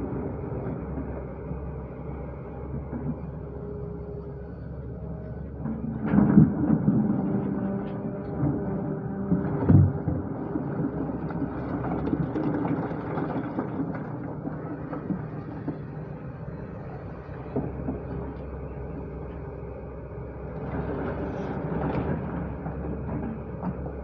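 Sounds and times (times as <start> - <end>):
diesel engine running: 0.0 - 24.0.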